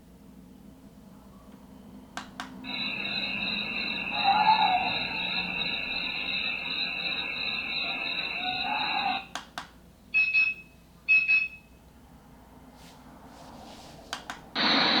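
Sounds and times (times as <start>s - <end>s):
electronic alarm beeps: 2.6s - 9.3s, 10.2s - 11.7s
loud steady hiss: 2.6s - 9.3s, 14.6s - 15.0s
clicks: 14.1s - 14.4s.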